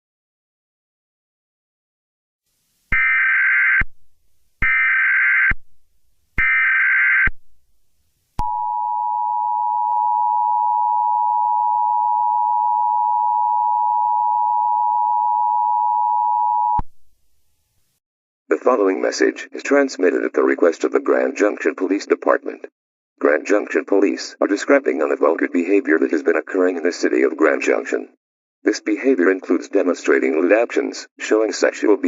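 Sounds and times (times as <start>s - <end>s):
two-tone attention signal: 8.4s - 16.8s.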